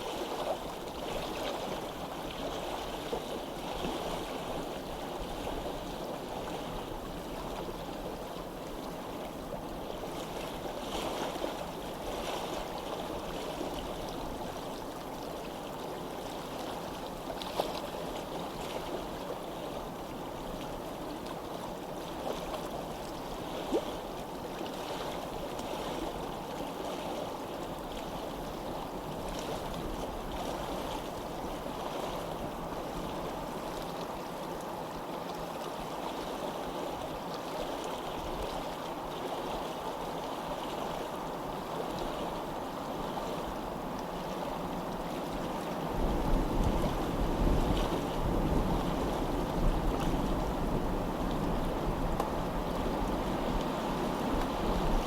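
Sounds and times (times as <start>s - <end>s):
flowing water babbling: 0.0s - 55.0s.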